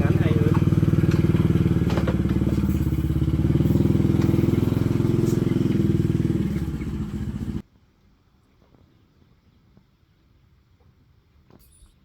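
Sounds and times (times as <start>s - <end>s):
diesel engine running: 0.0s - 7.6s.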